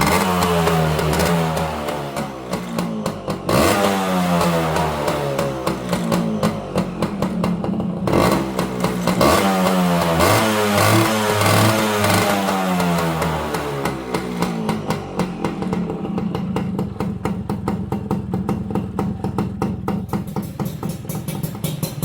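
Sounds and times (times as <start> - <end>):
motorcycle engine revving: 0.0 - 22.0.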